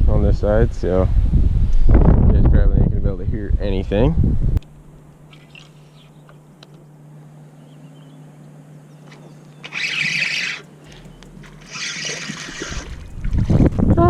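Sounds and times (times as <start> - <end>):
low hum: 0.0 - 14.0
faint bird chirp: 5.3 - 13.1.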